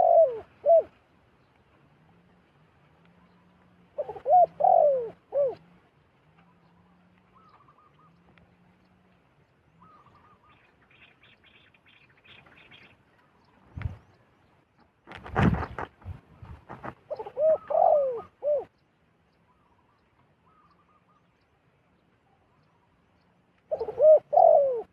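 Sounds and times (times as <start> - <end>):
faint low coos: 0.0 - 1.0, 1.7 - 9.2, 17.1 - 18.7, 23.7 - 24.9
doves cooing: 0.0 - 1.1, 1.7 - 11.6, 16.8 - 18.7, 23.7 - 24.9.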